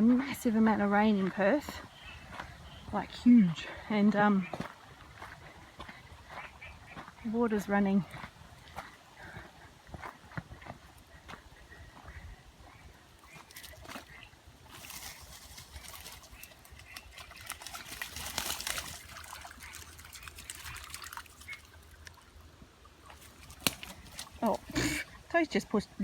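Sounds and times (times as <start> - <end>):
water trickling: 13.3 - 25.1.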